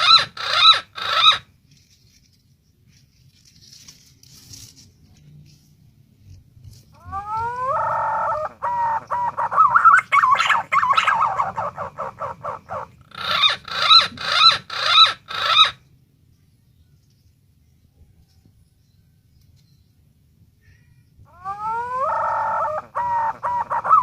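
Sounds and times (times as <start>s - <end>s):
pigeon whistled calls: 7.0s - 15.8s, 21.4s - 24.0s.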